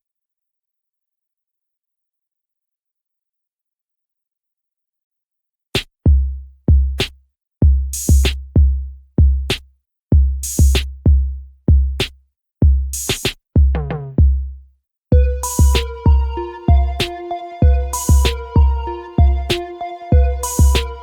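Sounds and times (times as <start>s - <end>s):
drum machine beat: 5.8s - 21.0s.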